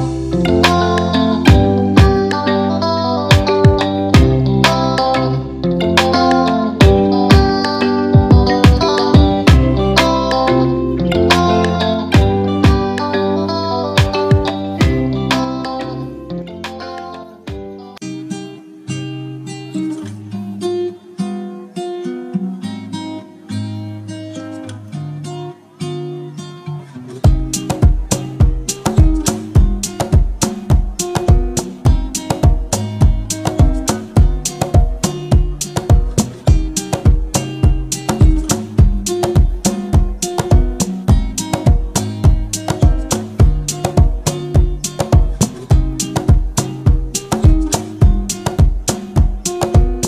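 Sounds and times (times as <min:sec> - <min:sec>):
sustained guitar notes: 0:00.0 - 0:21.2, 0:21.8 - 0:50.0
drum hits: 0:01.5 - 0:02.3, 0:03.3 - 0:04.5, 0:06.8 - 0:09.8, 0:12.2 - 0:13.0, 0:14.0 - 0:15.1, 0:27.3 - 0:50.0.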